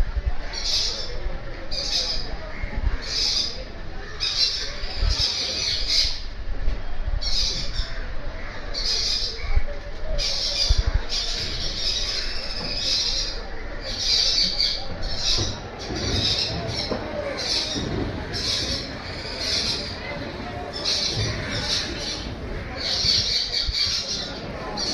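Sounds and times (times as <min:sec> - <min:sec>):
pet birds squawking: 0:10.2 - 0:24.9.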